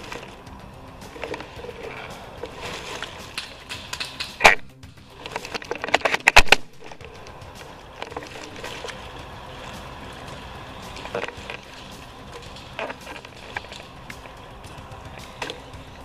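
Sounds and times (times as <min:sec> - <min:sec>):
steady hiss: 0:00.0 - 0:16.0
sharp clicks: 0:02.4 - 0:09.0.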